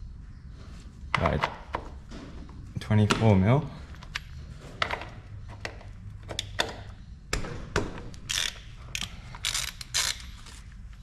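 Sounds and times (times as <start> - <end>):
ratchet wrench clicking: 8.2 - 10.4.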